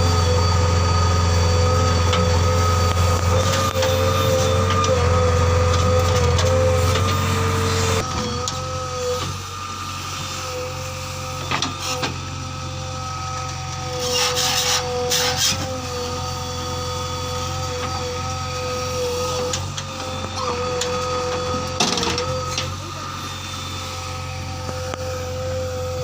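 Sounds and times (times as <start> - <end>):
high whine: 0.0 - 12.0
diesel engine running: 0.0 - 26.0.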